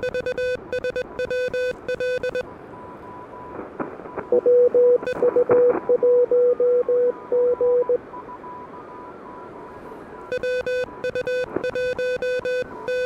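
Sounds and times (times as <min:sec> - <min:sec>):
morse code beeping: 0:00.0 - 0:02.4, 0:04.3 - 0:08.0, 0:10.3 - 0:13.0
faint high-pitched morse signal: 0:04.3 - 0:13.0.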